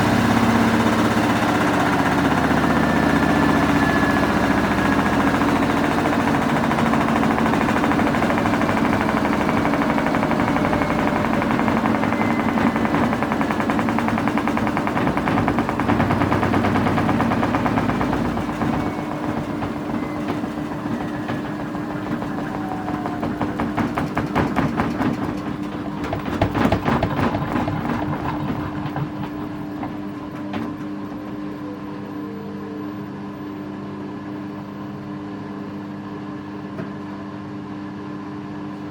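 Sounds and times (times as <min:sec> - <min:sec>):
drum rattling: 0:00.0 - 0:30.1
washing machine drum spinning down: 0:00.0 - 0:32.1.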